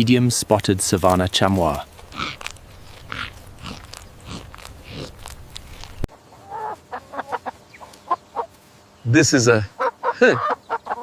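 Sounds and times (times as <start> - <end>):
chicken clucking: 6.3 - 8.6, 9.7 - 11.0.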